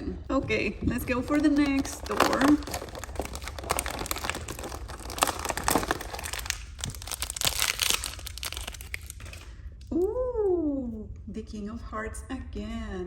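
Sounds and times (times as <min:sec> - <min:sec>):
toy packaging crinkling: 0:00.9 - 0:09.5.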